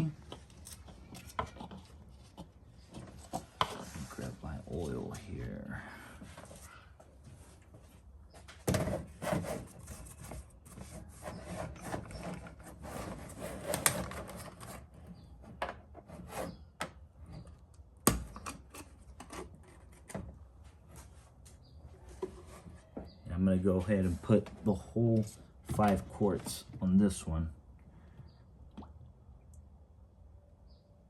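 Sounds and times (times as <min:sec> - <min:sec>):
plastic jug rubbing and scraping: 0:00.3 - 0:05.3, 0:08.7 - 0:17.5, 0:23.8 - 0:26.7.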